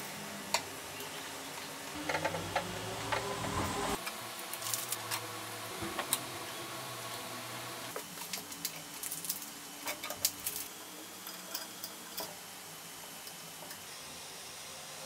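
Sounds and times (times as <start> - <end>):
low hum: 1.8 - 7.9.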